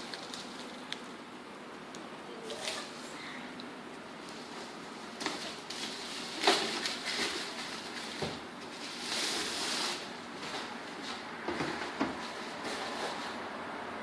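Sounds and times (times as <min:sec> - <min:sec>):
packaging rustling: 0:00.0 - 0:01.0, 0:05.2 - 0:10.7.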